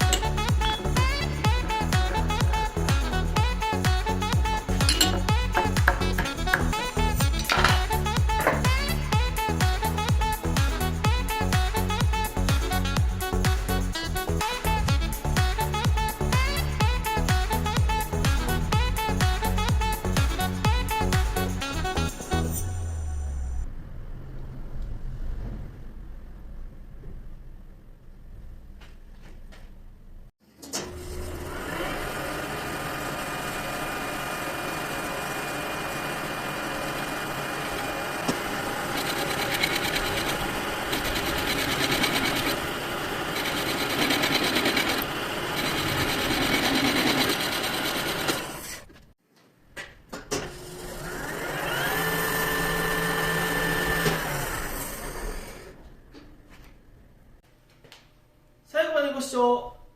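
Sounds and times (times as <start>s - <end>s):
metal lathe running: 0.0s - 3.4s, 4.8s - 9.1s, 31.2s - 48.8s
lathe cutting noise: 31.2s - 48.9s, 50.6s - 55.8s.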